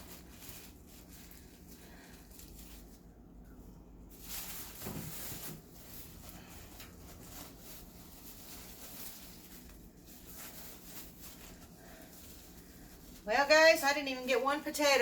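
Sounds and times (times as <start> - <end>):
hands sifting soil: 0.0 - 3.4
plastic bag rustling: 0.0 - 15.0.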